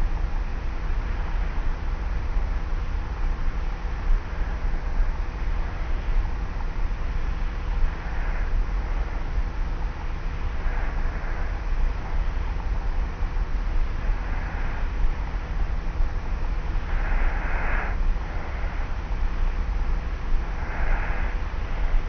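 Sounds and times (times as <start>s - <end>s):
tape recorder hum and hiss: 0.0s - 22.0s
person snoring softly: 10.5s - 11.6s, 16.8s - 19.0s, 20.4s - 22.0s.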